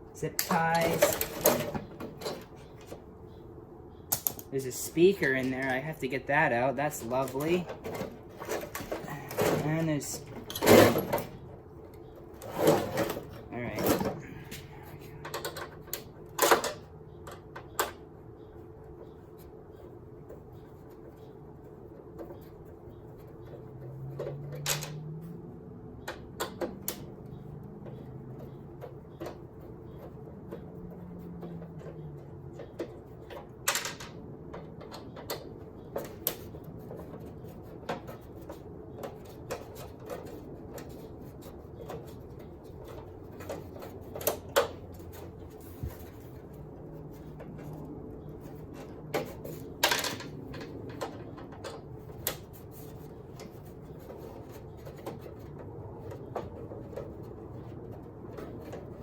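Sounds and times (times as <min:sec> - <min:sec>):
steady low hum: 0:00.0 - 0:59.0
hand tools clicking and knocking: 0:00.2 - 0:03.0, 0:04.1 - 0:18.0, 0:26.0 - 0:59.0.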